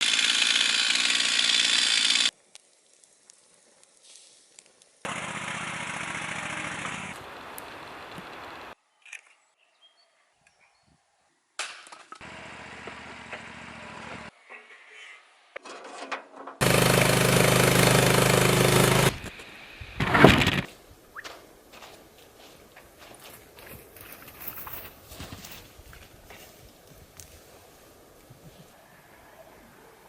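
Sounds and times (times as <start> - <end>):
small petrol engine running: 0.0 - 2.3, 5.1 - 8.7, 16.6 - 19.3.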